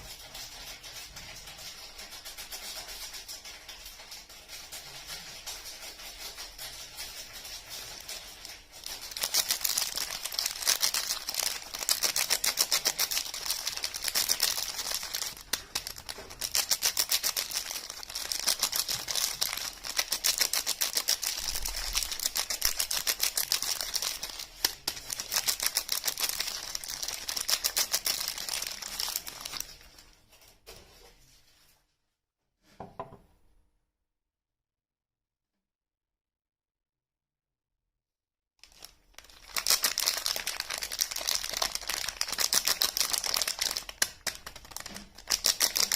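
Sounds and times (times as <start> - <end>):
wrapper crinkling and tearing: 3.4 - 30.2, 38.6 - 45.9.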